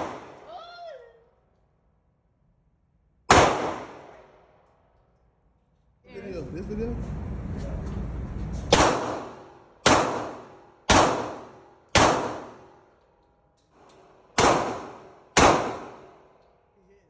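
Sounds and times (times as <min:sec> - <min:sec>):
gunshots: 0:00.0 - 0:00.5, 0:03.3 - 0:04.3, 0:08.7 - 0:12.8, 0:14.3 - 0:16.2
steady low rumble: 0:06.1 - 0:09.4.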